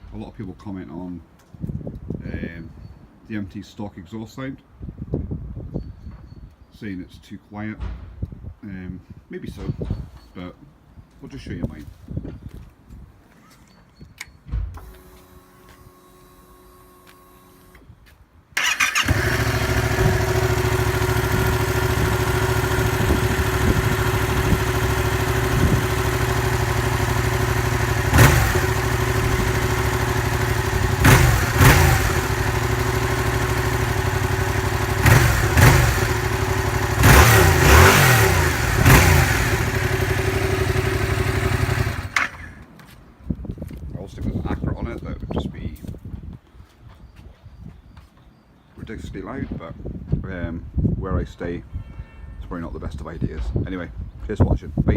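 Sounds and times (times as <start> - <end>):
motorcycle engine idling and revving: 18.6 - 42.6.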